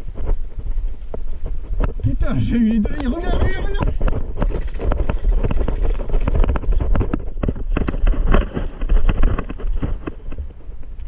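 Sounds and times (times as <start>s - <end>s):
wind buffeting microphone: 0.0s - 11.0s
sharp knocks and clatter: 3.4s - 10.4s.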